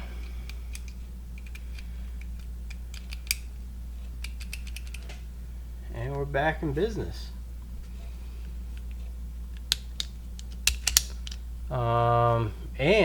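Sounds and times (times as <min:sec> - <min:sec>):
utility knife clicks and snaps: 0:09.6 - 0:11.4.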